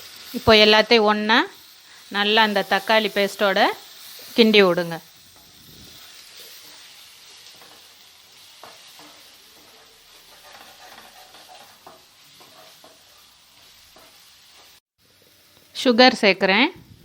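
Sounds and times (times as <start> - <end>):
paste sizzling in oil: 0.0 - 17.0
spoon scraping a pan: 2.5 - 14.8.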